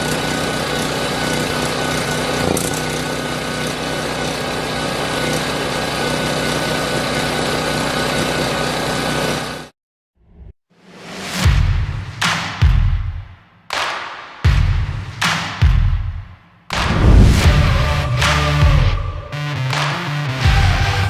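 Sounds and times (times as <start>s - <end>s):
generator engine running: 0.0s - 9.7s.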